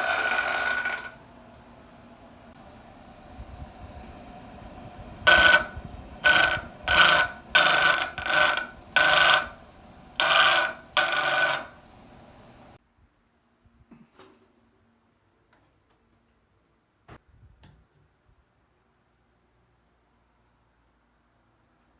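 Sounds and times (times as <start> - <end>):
exhaust fan scraping and squealing: 0.0 - 1.3, 2.6 - 12.8
faint steady hum: 0.0 - 21.9.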